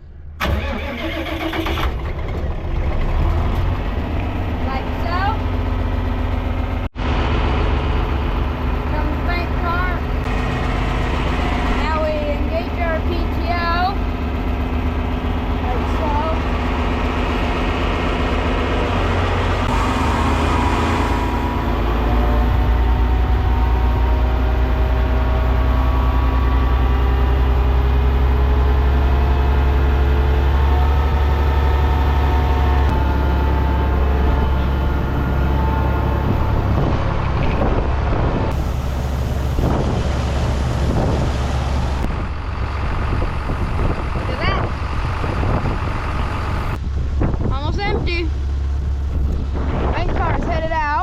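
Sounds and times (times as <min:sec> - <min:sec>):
tractor engines droning: 0:00.0 - 0:51.0
grain auger running: 0:07.0 - 0:37.8.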